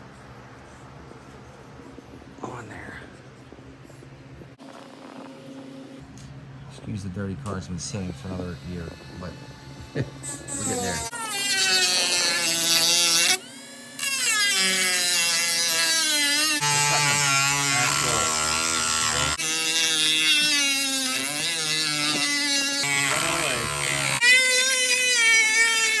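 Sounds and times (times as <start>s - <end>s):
rotary tool grinding steel: 8.0s - 26.0s.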